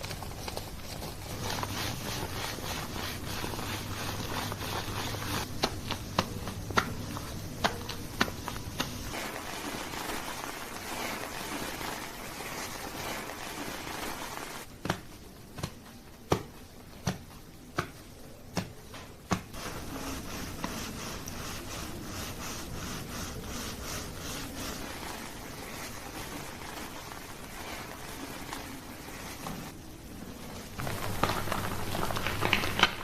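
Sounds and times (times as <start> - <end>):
wet scrubbing of lathered hair: 0.0 - 14.7, 19.5 - 29.8.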